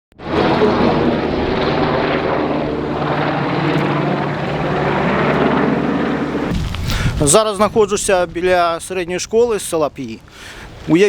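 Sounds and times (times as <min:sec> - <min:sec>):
motor drone: 0:00.2 - 0:06.6.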